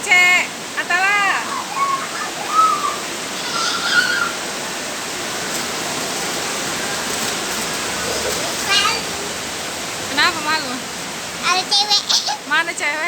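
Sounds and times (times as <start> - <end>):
steady rain hiss: 0.0 - 13.0
child calling: 1.4 - 4.5, 8.4 - 9.2, 11.4 - 12.5.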